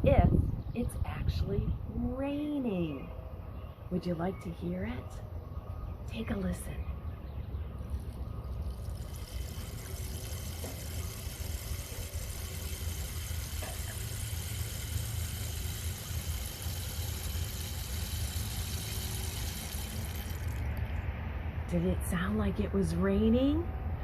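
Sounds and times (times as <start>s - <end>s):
rainstick pebbles trickling: 7.9s - 20.9s.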